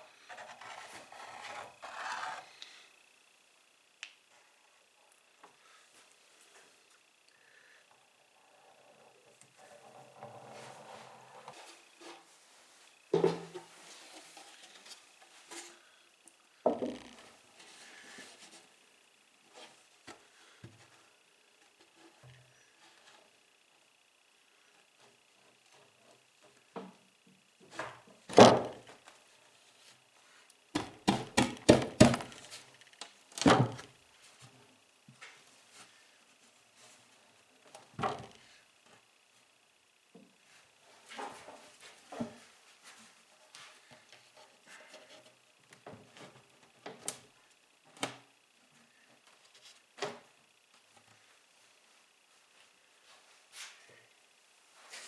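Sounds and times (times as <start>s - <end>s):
wooden knocks of cabinet panels: 30.8s - 32.3s.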